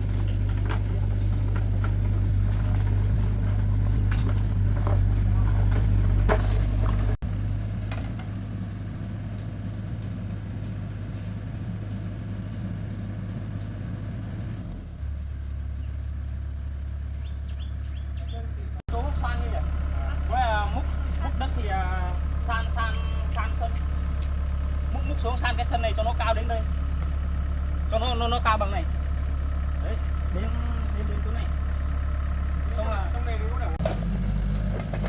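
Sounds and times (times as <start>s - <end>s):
metallic knocks and clanks: 0.0s - 7.1s
diesel engine running: 0.0s - 35.0s.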